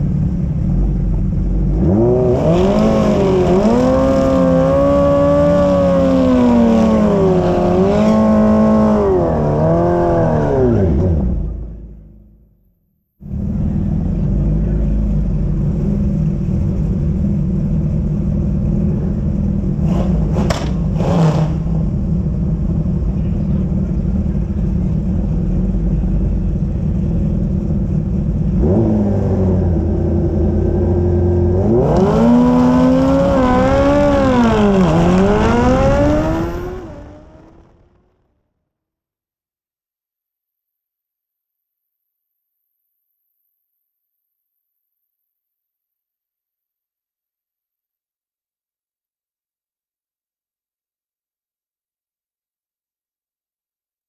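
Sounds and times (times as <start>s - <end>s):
drag racing engines rumbling: 0.0s - 12.3s, 13.2s - 38.5s
engine revving hard: 1.7s - 11.6s, 19.8s - 21.8s, 28.6s - 38.3s.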